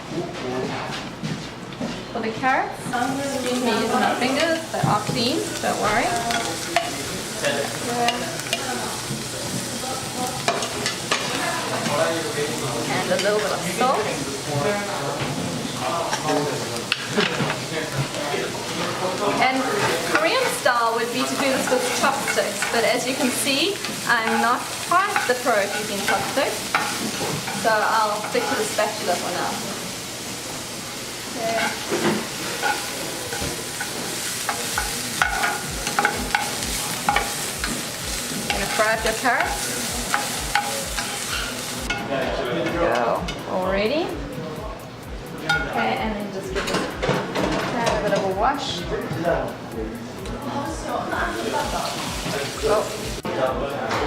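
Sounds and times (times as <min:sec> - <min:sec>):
carrot strips sizzling in oil: 0:03.0 - 0:44.4, 0:50.5 - 0:53.2
spatula scraping pan: 0:19.7 - 0:29.4, 0:31.4 - 0:42.1.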